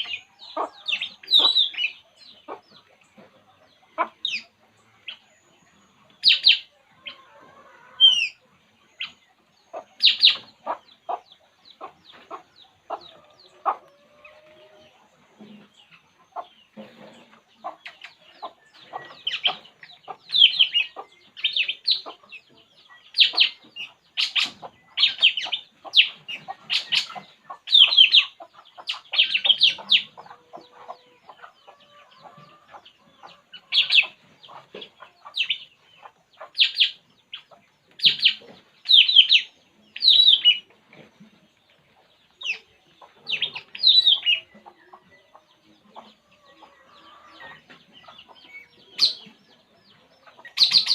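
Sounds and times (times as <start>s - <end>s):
bird chirping: 0.0s - 50.9s.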